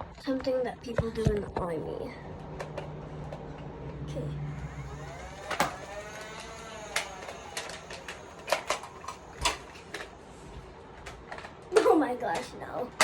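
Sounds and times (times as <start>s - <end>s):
faint whirring: 0.0s - 13.0s
plastic toy blaster clicks: 4.8s - 10.2s.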